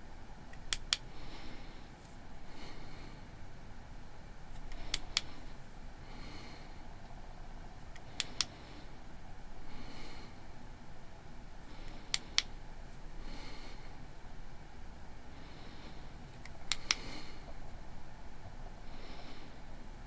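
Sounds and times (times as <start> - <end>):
flashlight switch double clicks: 0.6 - 1.1, 4.6 - 5.4, 7.9 - 8.6, 16.4 - 17.1
soft nasal breathing: 0.6 - 20.0.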